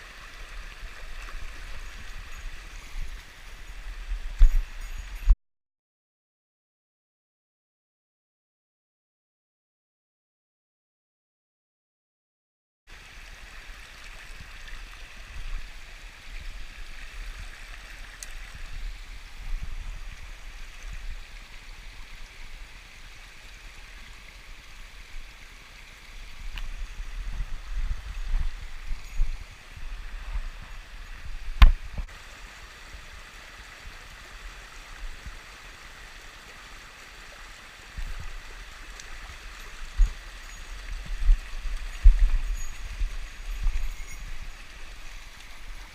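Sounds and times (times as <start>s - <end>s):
stream rushing over rocks: 0.0s - 5.3s, 12.9s - 45.9s
low thuds on microphone: 31.3s - 32.1s.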